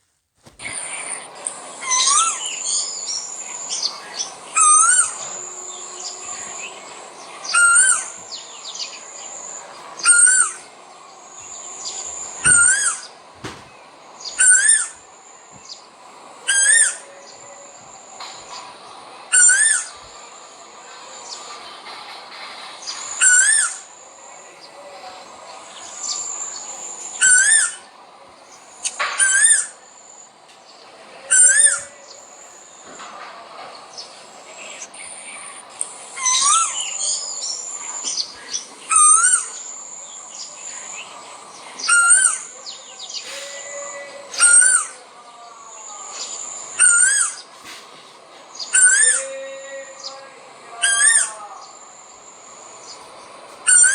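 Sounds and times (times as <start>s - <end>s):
high-pitched bird chirps: 1.8s - 10.7s, 11.4s - 13.1s, 14.2s - 15.0s, 16.5s - 17.4s, 19.3s - 20.0s, 22.8s - 23.9s, 25.8s - 27.9s, 28.8s - 29.8s, 31.3s - 32.0s, 34.8s - 39.7s, 46.1s - 47.5s, 48.6s - 49.4s, 53.7s - 53.9s.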